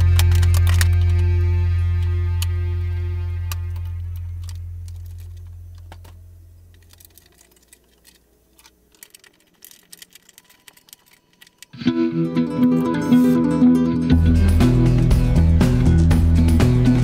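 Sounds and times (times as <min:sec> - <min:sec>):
background music: 0:00.0 - 0:05.0, 0:11.8 - 0:17.0
guitar music: 0:00.0 - 0:05.4, 0:11.7 - 0:17.0.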